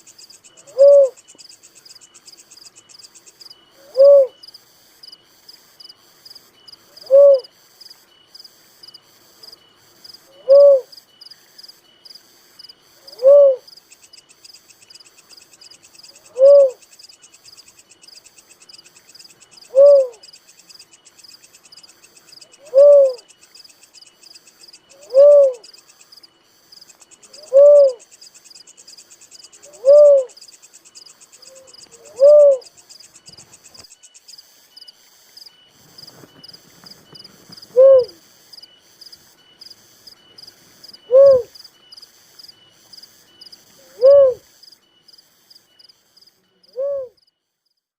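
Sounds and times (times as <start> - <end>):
dove hooting: 0.0 - 1.3, 3.7 - 4.4, 6.9 - 7.6, 10.3 - 11.0, 13.0 - 13.7, 16.1 - 16.9, 19.4 - 20.4, 22.4 - 23.4, 24.8 - 26.0, 27.2 - 28.1, 29.5 - 30.4, 31.2 - 33.5, 35.8 - 38.3, 40.7 - 41.6, 43.7 - 44.6, 46.6 - 47.2
insects chirping: 0.0 - 47.9.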